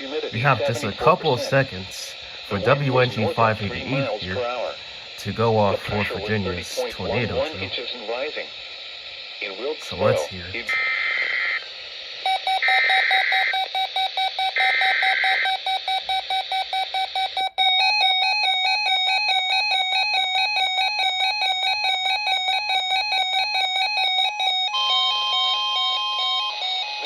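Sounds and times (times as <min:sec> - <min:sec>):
fast steady alarm beeping: 0:00.2 - 0:27.0
harsh digital bursts: 0:00.3 - 0:07.8, 0:09.8 - 0:11.6
alternating high and low alarm tones: 0:00.4 - 0:07.7, 0:09.8 - 0:27.0.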